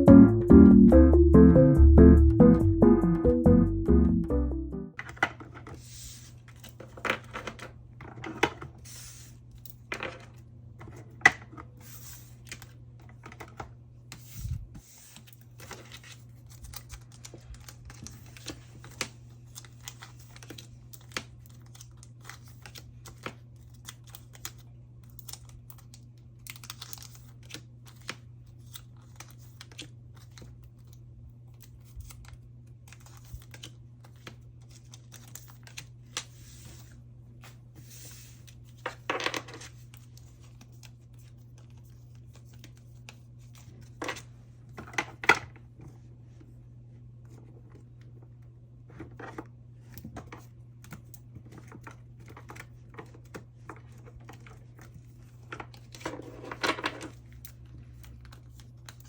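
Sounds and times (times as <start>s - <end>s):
handling plastic sleeves and cards: 15.1s - 45.2s, 57.1s - 59.0s.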